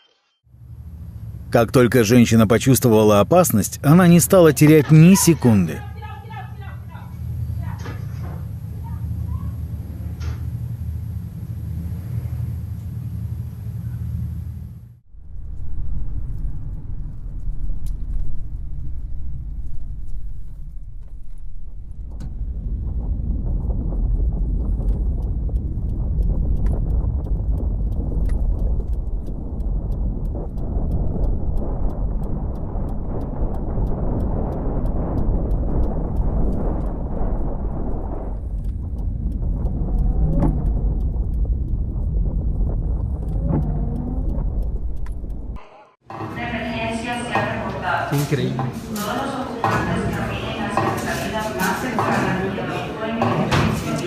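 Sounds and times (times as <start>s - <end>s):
deep low rumble: 0.5s - 54.0s
faint clicks and rattles: 15.4s - 54.0s
short pitched sounds: 43.1s - 46.4s.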